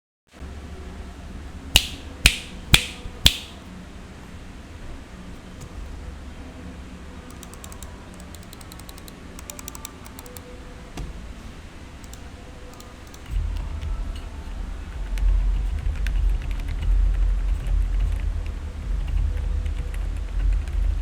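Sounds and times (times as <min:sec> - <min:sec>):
soft keyboard key clicks: 0:07.3 - 0:10.5.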